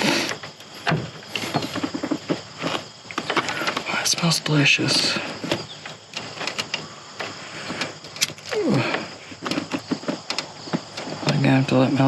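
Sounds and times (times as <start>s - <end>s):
small handling clicks: 5.4s - 8.6s.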